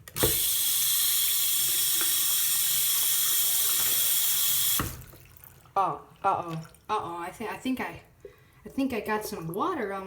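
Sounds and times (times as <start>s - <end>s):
tap water splashing: 0.0s - 7.2s.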